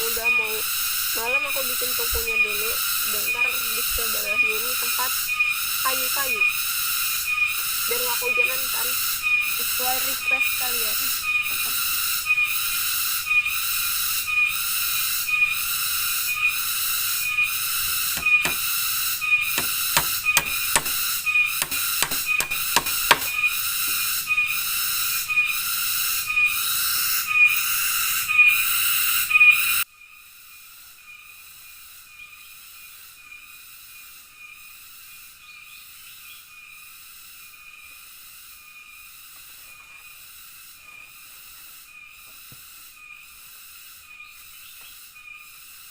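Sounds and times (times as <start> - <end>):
insect chorus droning: 0.0 - 45.9
sharp knocks: 18.0 - 18.8, 19.5 - 23.4.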